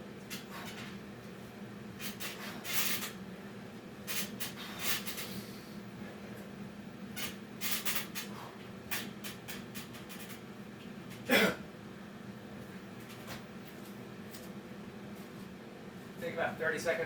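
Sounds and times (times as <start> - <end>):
steady low hum: 0.0 - 17.0
man coughing: 11.3 - 11.7.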